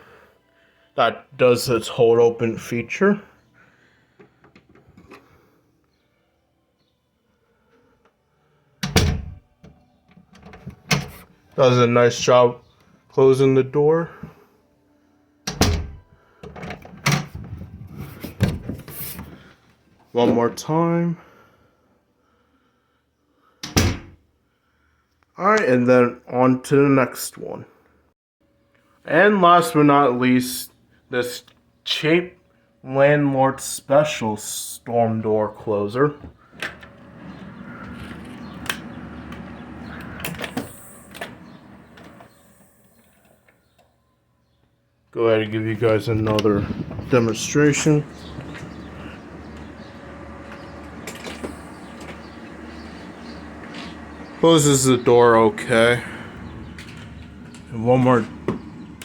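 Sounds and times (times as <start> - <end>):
door thumping: 8.8 - 9.4, 15.5 - 16.0, 18.2 - 19.0, 55.7 - 59.0
storm door clicks and rattles: 15.5 - 16.0.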